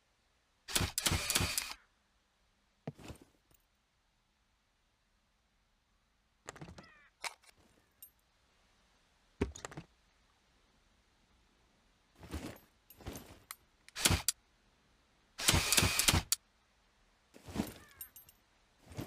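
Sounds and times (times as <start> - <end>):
crossbow mechanical clicks and clacks: 0.7 - 1.8, 13.4 - 14.4, 15.4 - 16.4
crossbow rattles: 17.4 - 18.4.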